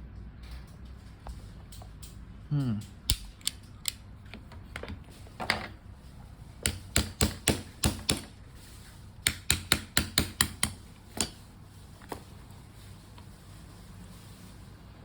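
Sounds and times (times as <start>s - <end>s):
metallic pistol clicks: 3.1s - 4.0s.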